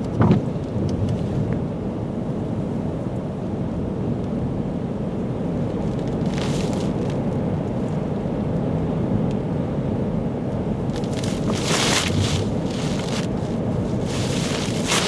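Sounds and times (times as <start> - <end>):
storm wind blasting microphone: 10.2 - 15.0.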